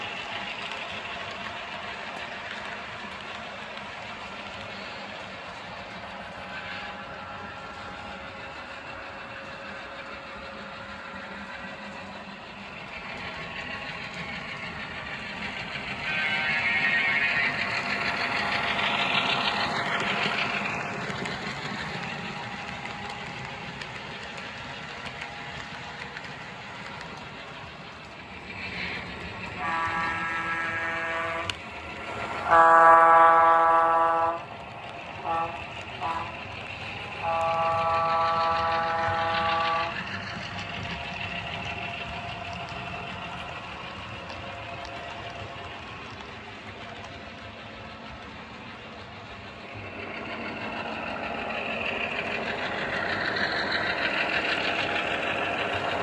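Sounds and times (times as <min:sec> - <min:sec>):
model train wheels on track: 0:00.0 - 0:56.0
locomotive horn chord: 0:29.6 - 0:31.5, 0:32.4 - 0:34.5, 0:35.2 - 0:36.4, 0:37.2 - 0:39.9.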